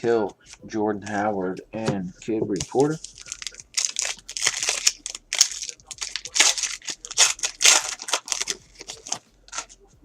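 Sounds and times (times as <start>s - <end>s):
foil wrapper crinkling and tearing: 2.6s - 9.7s.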